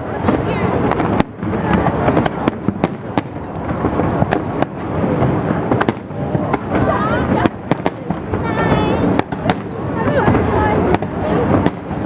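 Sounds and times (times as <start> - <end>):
fireworks bangs: 0.0 - 12.0
fireworks crackling: 0.0 - 12.0.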